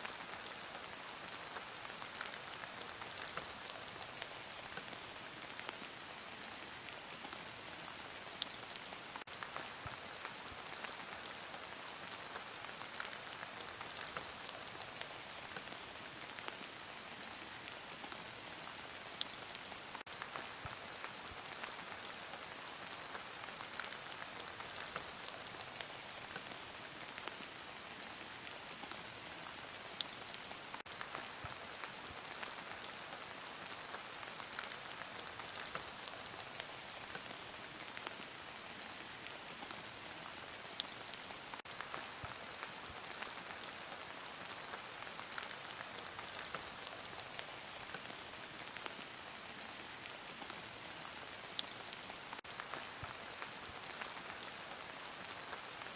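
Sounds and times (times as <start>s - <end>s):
heavy rain falling: 8.0s - 50.5s, 51.1s - 55.9s.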